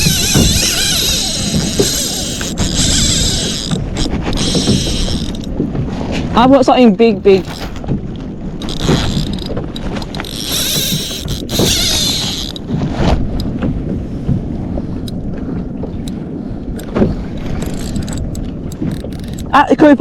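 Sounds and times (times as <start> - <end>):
water noise around kayak: 0.0 - 20.0
wind buffeting microphone: 0.0 - 20.0.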